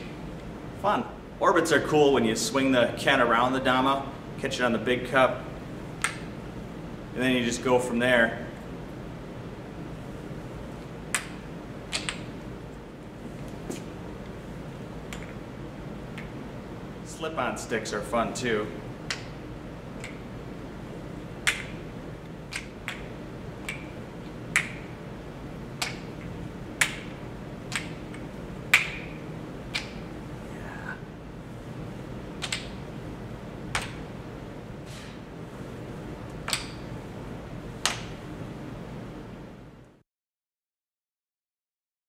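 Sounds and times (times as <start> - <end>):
steady low hum: 0.0 - 40.0
wooden ball clacking on cups: 21.4 - 21.8, 22.5 - 24.9, 27.7 - 30.1, 32.4 - 32.8.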